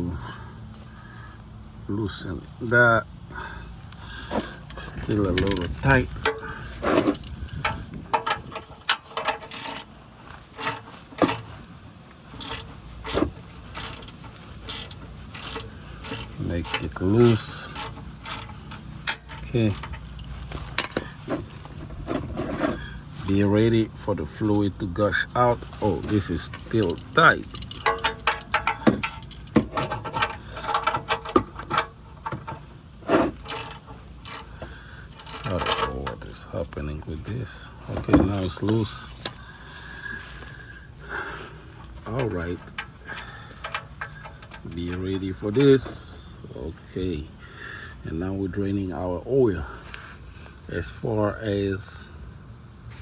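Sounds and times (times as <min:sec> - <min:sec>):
wrench clicking and scraping on metal: 0:03.9 - 0:11.6, 0:12.3 - 0:23.6, 0:24.3 - 0:36.3, 0:41.9 - 0:46.2
metal tools knocking: 0:04.3 - 0:09.9, 0:12.4 - 0:21.3, 0:26.0 - 0:32.7, 0:42.0 - 0:46.0.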